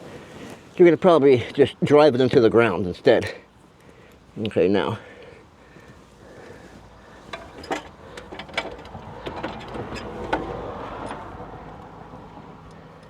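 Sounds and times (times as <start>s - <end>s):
soft handling noise: 0.0s - 1.7s, 5.6s - 11.4s
hand tools clicking and clinking: 7.2s - 11.3s.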